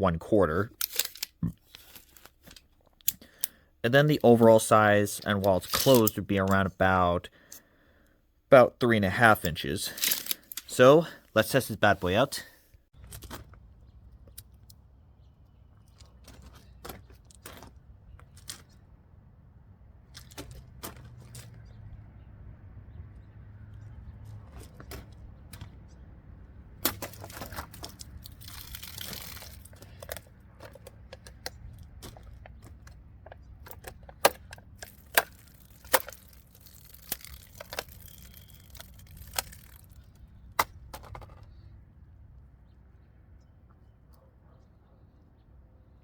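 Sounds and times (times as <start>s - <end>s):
sharp cracks: 26.8s - 30.2s, 33.5s - 41.0s.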